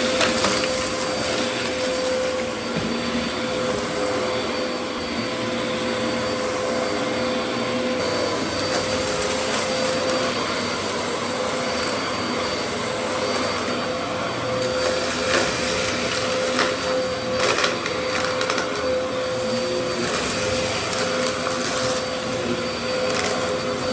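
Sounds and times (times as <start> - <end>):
vacuum cleaner running: 0.0 - 23.9.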